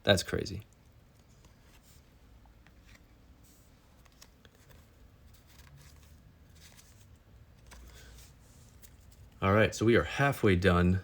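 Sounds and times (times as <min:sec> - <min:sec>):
trading cards rustling and clicking: 0:01.1 - 0:09.4.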